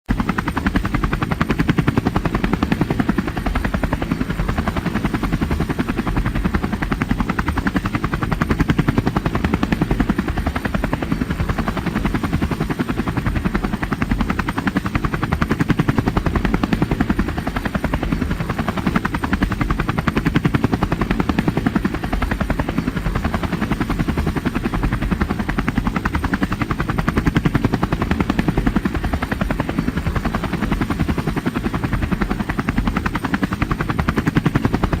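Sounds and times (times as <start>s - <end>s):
helicopter rotor chop: 0.1s - 35.0s.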